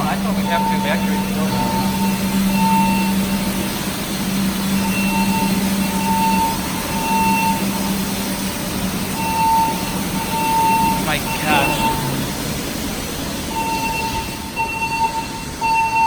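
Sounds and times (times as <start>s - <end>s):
mid-pitched alarm tone: 0.0s - 3.7s, 9.2s - 12.5s.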